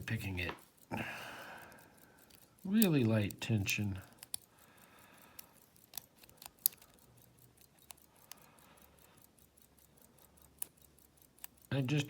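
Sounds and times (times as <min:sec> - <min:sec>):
lock pick clicking in padlock: 0:05.4 - 0:08.4.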